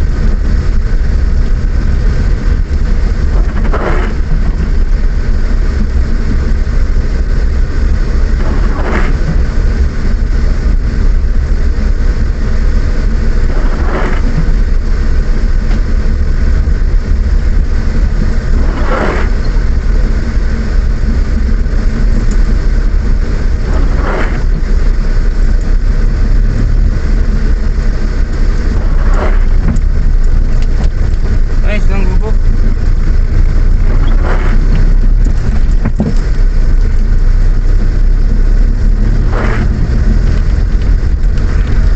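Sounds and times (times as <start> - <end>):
car engine and road rumble: 0.0 - 41.9
tyre swish on wet road: 0.1 - 5.0, 5.6 - 10.7, 12.4 - 41.9.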